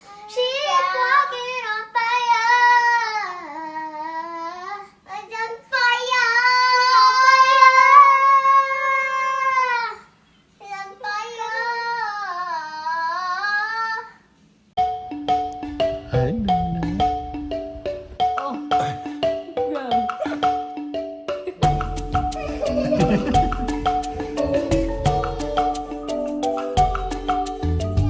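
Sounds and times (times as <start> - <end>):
child singing: 0.1 - 14.2, 24.3 - 26.8.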